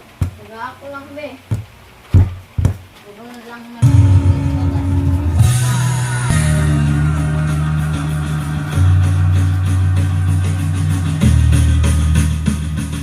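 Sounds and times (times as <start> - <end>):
instrumental music with heavy bass: 3.8 - 13.0.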